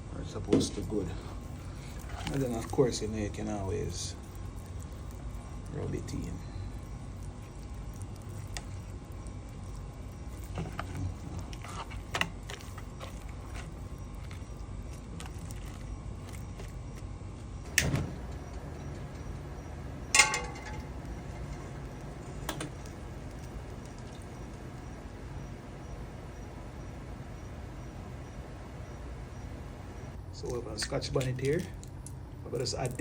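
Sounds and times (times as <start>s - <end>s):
low steady hum: 0.0s - 33.0s
dish clinking: 17.7s - 24.3s.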